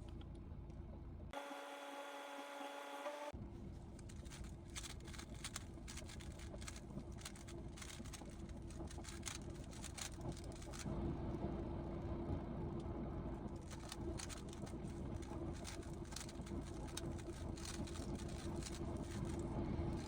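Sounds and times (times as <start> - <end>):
steady low hum: 0.0 - 20.0
low rumble: 3.4 - 20.0.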